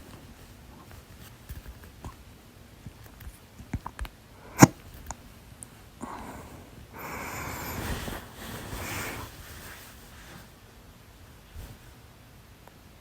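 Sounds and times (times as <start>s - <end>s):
person breathing: 6.0s - 9.4s.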